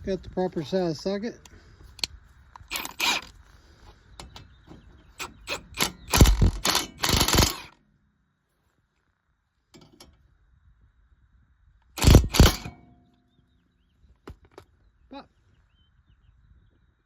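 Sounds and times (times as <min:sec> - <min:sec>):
impact wrench hammering: 0:02.6 - 0:03.3, 0:05.2 - 0:07.7, 0:12.0 - 0:12.8
clicks: 0:05.2 - 0:07.7.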